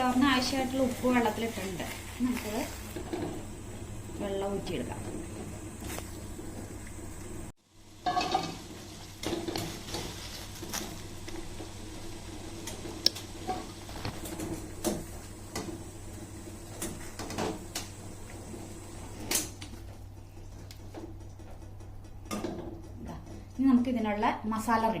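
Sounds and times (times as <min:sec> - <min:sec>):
steady low hum: 0:00.0 - 0:25.0
pots and utensils clinking: 0:08.0 - 0:10.9.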